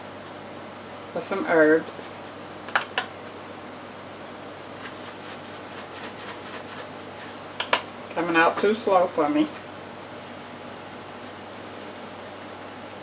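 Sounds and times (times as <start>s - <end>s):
herb shaker clicks: 2.7s - 3.2s, 4.8s - 7.9s.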